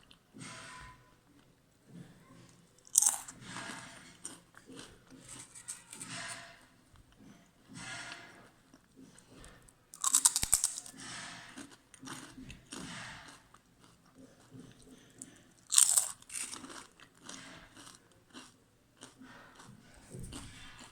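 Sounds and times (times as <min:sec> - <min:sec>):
chewing crunches: 0:02.8 - 0:06.4, 0:07.1 - 0:20.9
crunching bites of fried potatoes: 0:02.8 - 0:06.5, 0:10.0 - 0:20.9.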